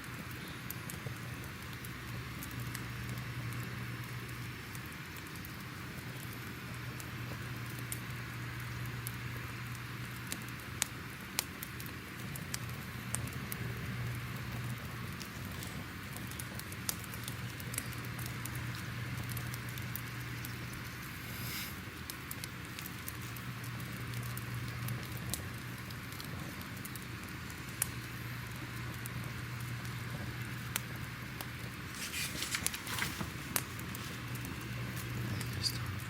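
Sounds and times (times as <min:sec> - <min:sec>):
fire crackling and popping: 0:00.0 - 0:36.0
low steady hum: 0:12.2 - 0:36.0.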